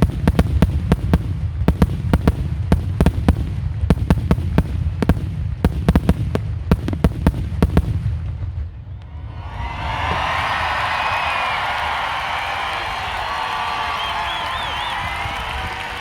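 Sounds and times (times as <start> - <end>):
low rumbling echo: 0.0 - 11.5
fireworks bursting: 0.0 - 16.0.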